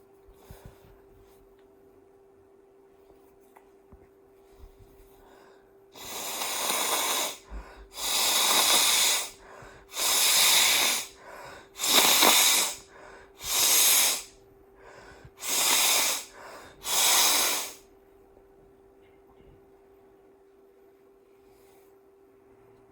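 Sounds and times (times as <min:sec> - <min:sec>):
person blowing congested nose: 0:06.0 - 0:14.4, 0:15.2 - 0:17.8.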